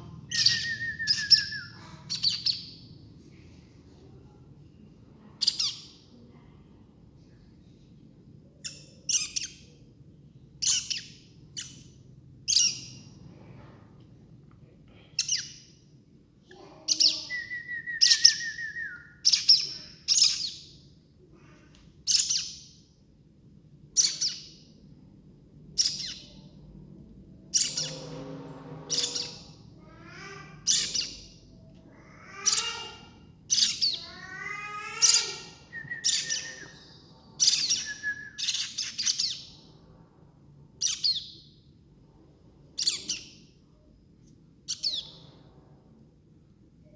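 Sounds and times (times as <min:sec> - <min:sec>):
baby birds chirping: 0:00.0 - 0:03.4, 0:05.4 - 0:06.1, 0:08.6 - 0:09.8, 0:10.6 - 0:13.2, 0:16.5 - 0:22.8, 0:23.9 - 0:24.9, 0:25.7 - 0:26.7, 0:27.5 - 0:39.8, 0:40.8 - 0:41.5, 0:42.8 - 0:43.5, 0:44.7 - 0:45.4.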